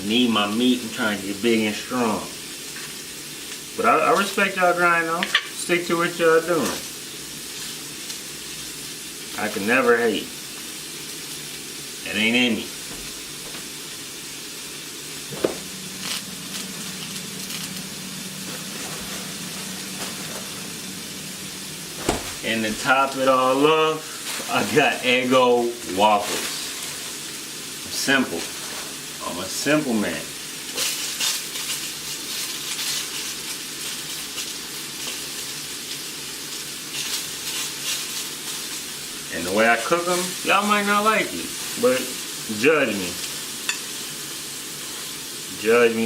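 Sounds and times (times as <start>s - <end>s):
sausages sizzling in a frying pan: 0.0s - 46.0s
low steady hum: 15.2s - 23.6s.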